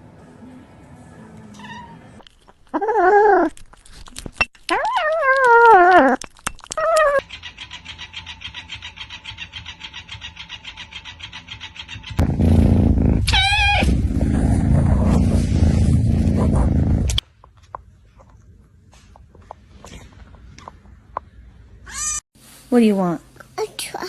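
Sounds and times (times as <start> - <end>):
cat meowing: 1.5 - 2.1, 13.2 - 14.0
fast even pulsing: 7.2 - 17.2.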